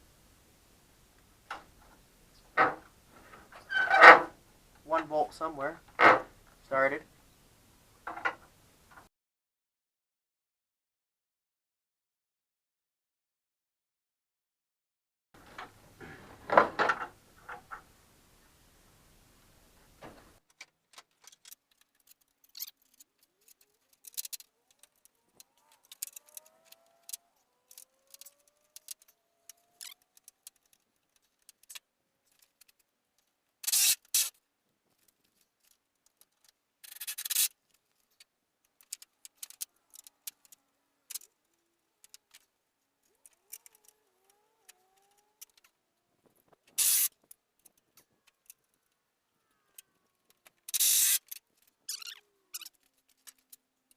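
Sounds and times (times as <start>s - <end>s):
squeaky metal-on-metal rubbing: 3.6s - 4.4s, 21.2s - 30.7s, 46.8s - 47.2s, 50.7s - 53.5s
tools and metal parts clanking: 20.5s - 32.8s
impact wrench bursts: 46.8s - 47.1s, 50.7s - 51.4s.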